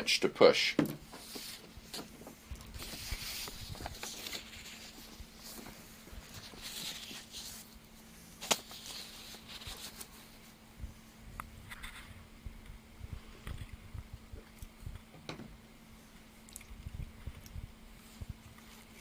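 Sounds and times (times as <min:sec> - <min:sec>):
steady low hum: 0:00.0 - 0:19.0
hands rubbing and rustling: 0:01.1 - 0:10.5.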